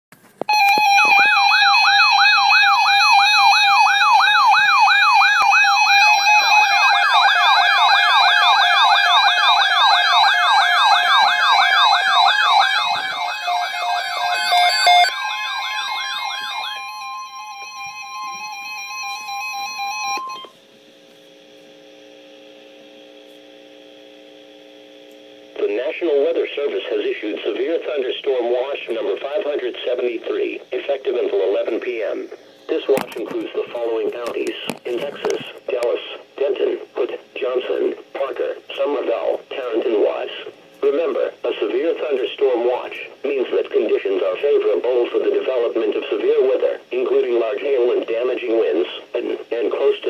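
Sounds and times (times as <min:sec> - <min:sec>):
faint steady hum: 0:00.2 - 0:50.0
emergency siren wailing: 0:00.5 - 0:20.5
steady high alert tone: 0:00.5 - 0:20.5.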